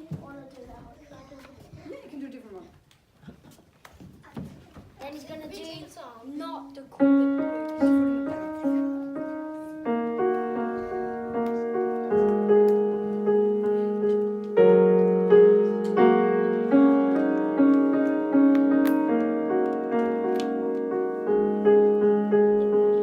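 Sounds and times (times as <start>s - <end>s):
piano played slowly: 7.0s - 23.0s.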